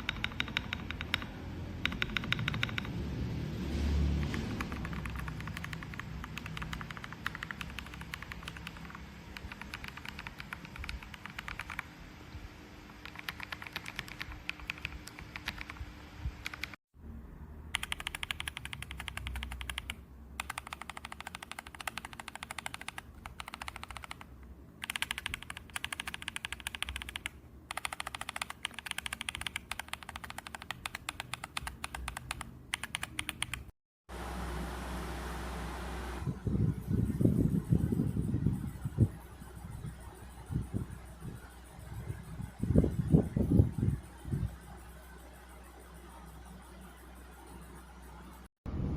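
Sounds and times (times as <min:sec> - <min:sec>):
mechanical keyboard typing: 0:00.0 - 0:03.0, 0:04.2 - 0:11.9, 0:13.0 - 0:16.8, 0:17.7 - 0:33.7.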